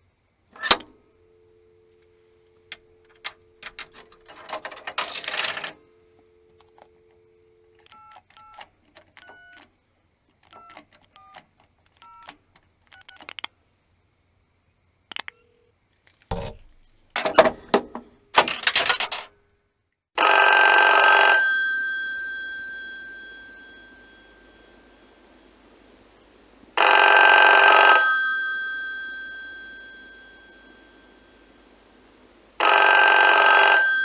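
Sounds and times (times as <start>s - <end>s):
push-button dialing beeps: 0.6s - 0.9s, 2.0s - 9.7s, 10.4s - 13.5s, 21.2s - 34.0s
telephone bell ringing: 0.6s - 9.5s, 20.2s - 34.0s.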